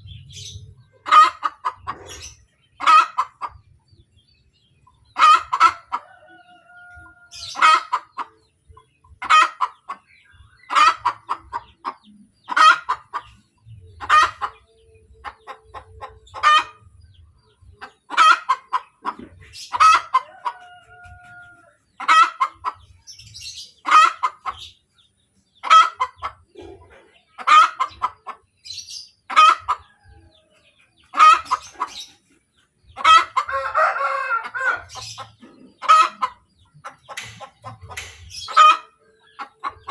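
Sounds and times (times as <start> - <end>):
hen cackling: 0.2 - 3.6, 5.1 - 8.4, 9.2 - 13.4, 14.0 - 14.6, 15.2 - 16.9, 17.8 - 21.4, 22.0 - 22.8, 23.8 - 24.6, 25.6 - 28.4, 29.3 - 29.9, 31.1 - 32.2, 33.0 - 39.9.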